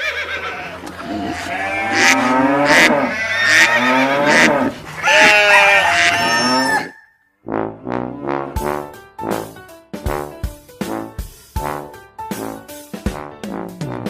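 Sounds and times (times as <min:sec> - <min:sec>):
farm animal calls: 0:00.0 - 0:07.2
brass tune: 0:01.4 - 0:06.8, 0:07.4 - 0:14.0.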